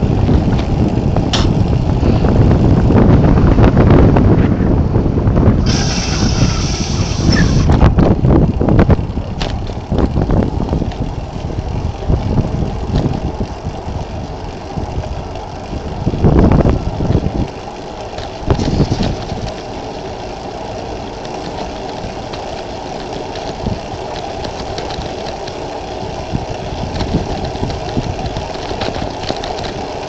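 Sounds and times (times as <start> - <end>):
gusting wind buffeting microphone: 0.0 - 30.0
vehicle engine running: 0.0 - 30.0
brief hiss: 5.7 - 7.7.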